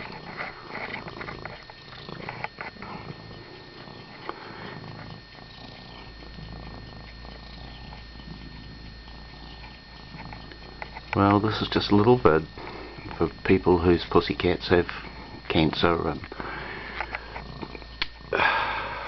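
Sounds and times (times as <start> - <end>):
handling rustles and clicks: 0.0 - 4.4, 7.1 - 12.0
cat purring: 0.0 - 19.0.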